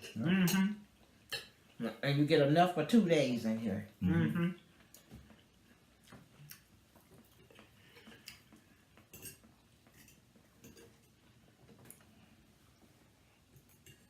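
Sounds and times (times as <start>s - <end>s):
cutlery clinking against dishes: 0.0s - 1.6s, 7.9s - 12.0s, 13.5s - 14.0s.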